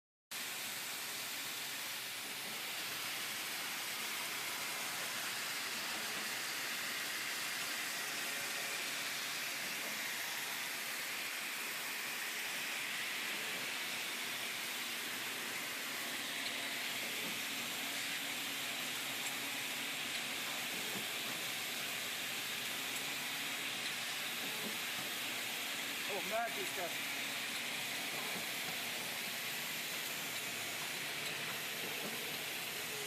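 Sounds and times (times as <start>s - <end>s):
bottling machinery hissing: 0.4s - 33.0s.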